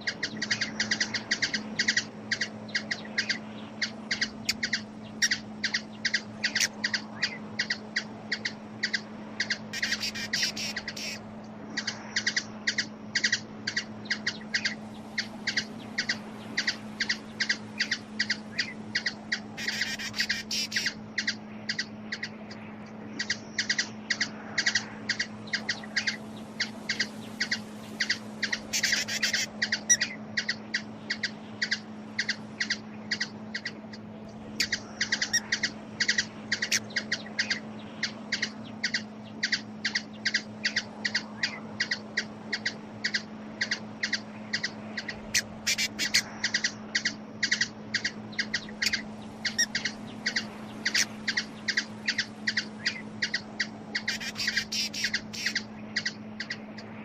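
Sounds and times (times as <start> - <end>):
hummingbird chip calls: 0.0 - 56.9
steady low hum: 0.0 - 57.0
hummingbird rapid chatter: 4.1 - 11.2, 15.4 - 21.8, 26.9 - 33.7, 41.8 - 56.6.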